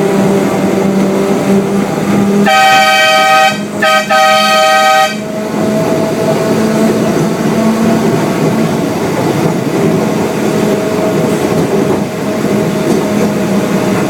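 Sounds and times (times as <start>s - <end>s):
train engine and wheels running: 0.0s - 14.0s
diesel locomotive horn: 1.6s - 8.1s.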